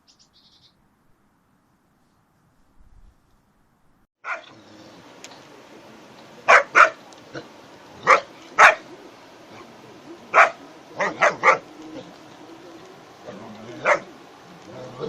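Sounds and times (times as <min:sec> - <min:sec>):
dog barking: 0:04.2 - 0:04.6, 0:06.4 - 0:07.4, 0:08.0 - 0:08.9, 0:10.3 - 0:11.7, 0:13.8 - 0:14.2.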